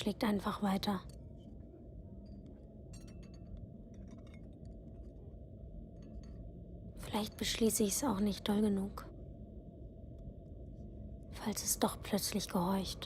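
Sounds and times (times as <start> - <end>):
low steady rumble: 0.0 - 13.0
light clinks and ticks: 2.2 - 5.3.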